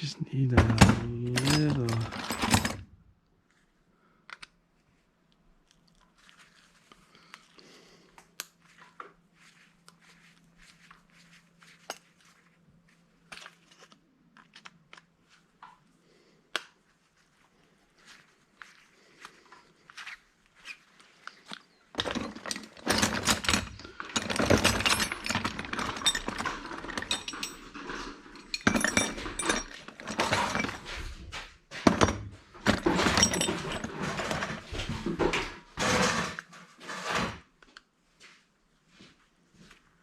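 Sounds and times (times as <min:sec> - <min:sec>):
metal parts and tools clattering: 0:00.5 - 0:02.9, 0:21.9 - 0:37.4.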